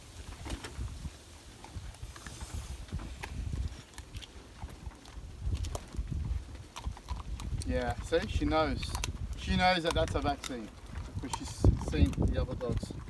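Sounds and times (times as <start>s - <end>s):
low rumble on microphone: 0.0s - 13.0s
short hiss: 2.2s - 3.0s.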